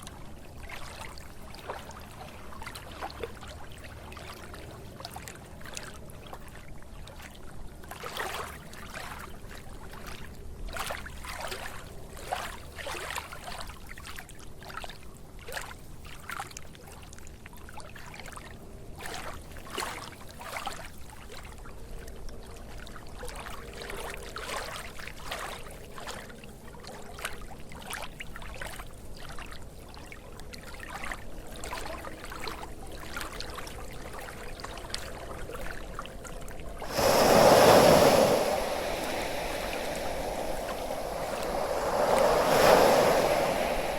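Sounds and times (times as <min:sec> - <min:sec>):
water trickling and splashing: 0:36.8 - 0:43.9.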